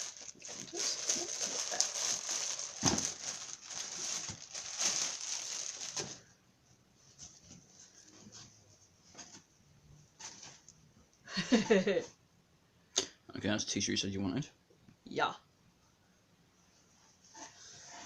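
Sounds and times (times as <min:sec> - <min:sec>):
packaging crinkling and rustling: 0:00.0 - 0:06.3.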